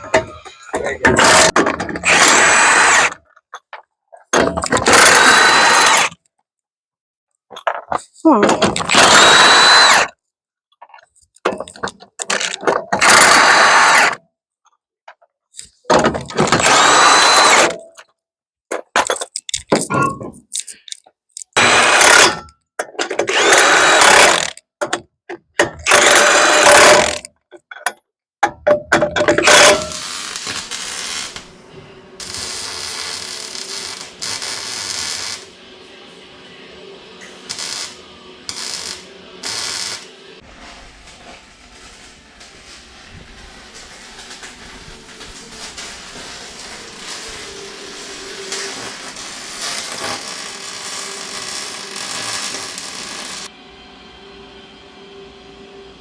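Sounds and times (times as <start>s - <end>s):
power tools running in bursts: 4.9s - 6.0s, 8.9s - 10.0s, 16.6s - 17.7s, 23.4s - 24.5s, 25.9s - 27.2s.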